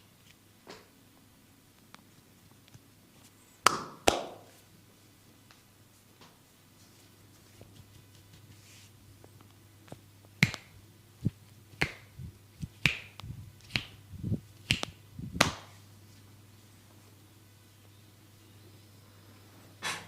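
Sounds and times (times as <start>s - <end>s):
hands snapping cracks: 9.9s - 10.7s, 11.7s - 12.1s, 12.7s - 14.0s, 14.6s - 15.7s.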